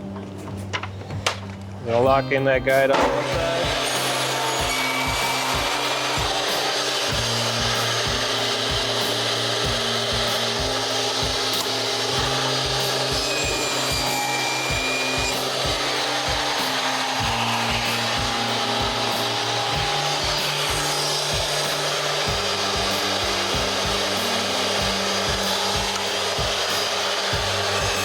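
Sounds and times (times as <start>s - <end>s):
background music with beat: 0.0s - 28.0s
table saw cutting: 2.7s - 28.0s.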